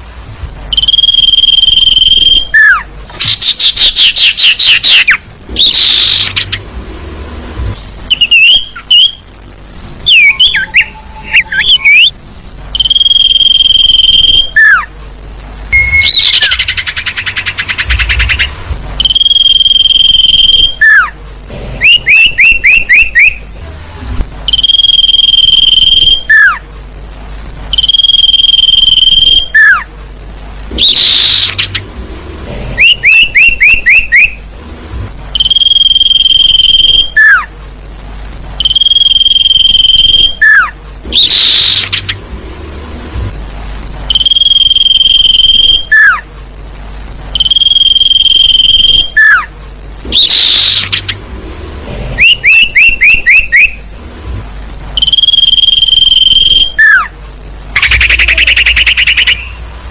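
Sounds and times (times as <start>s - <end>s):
recorded bird calls: 0.7s - 6.8s, 7.7s - 14.9s, 15.7s - 21.2s, 21.8s - 23.7s, 24.4s - 26.7s, 27.7s - 29.9s, 30.7s - 32.0s, 32.7s - 34.6s, 35.3s - 37.5s, 38.6s - 42.3s, 44.1s - 46.3s, 47.3s - 49.5s, 50.1s - 51.3s, 52.2s - 54.1s, 55.0s - 59.7s.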